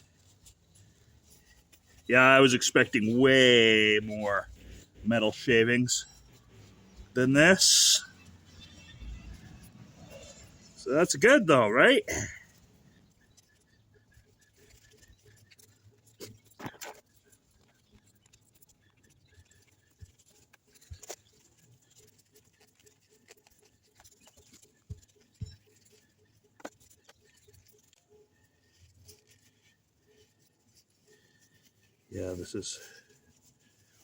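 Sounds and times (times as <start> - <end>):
light taps and scrapes of parts: 12.4 - 34.0.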